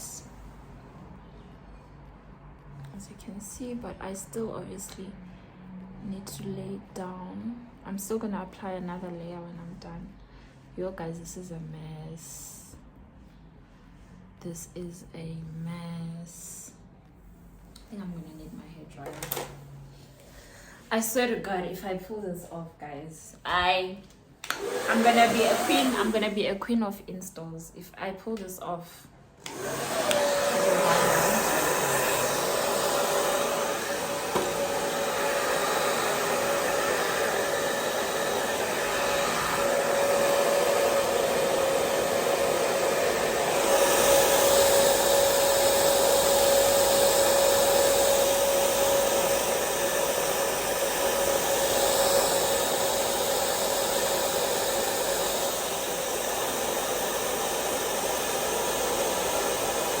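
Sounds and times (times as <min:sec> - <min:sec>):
hair dryer running: 0:19.0 - 0:19.6, 0:24.4 - 0:26.4, 0:29.4 - 1:00.0.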